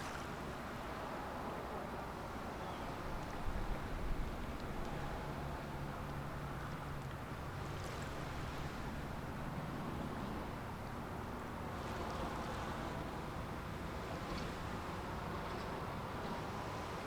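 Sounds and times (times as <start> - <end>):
wind: 0.0 - 17.0.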